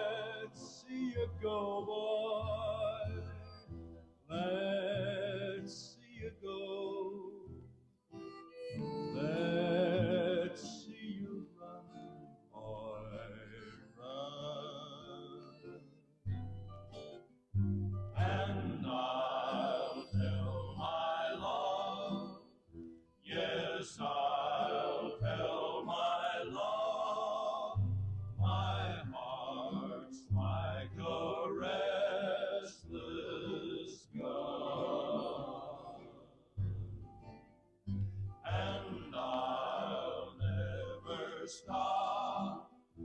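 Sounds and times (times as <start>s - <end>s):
male vocal group singing: 0.0s - 3.4s, 4.3s - 7.2s, 9.2s - 11.5s, 12.6s - 15.2s, 18.2s - 22.4s, 23.2s - 36.2s, 38.4s - 42.7s.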